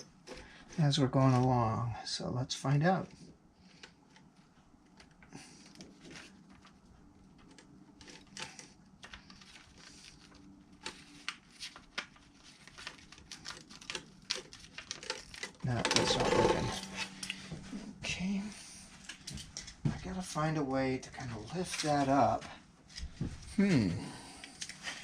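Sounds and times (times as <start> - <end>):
small clicks and crackles: 3.1 - 16.2
paper crinkling: 3.6 - 17.5.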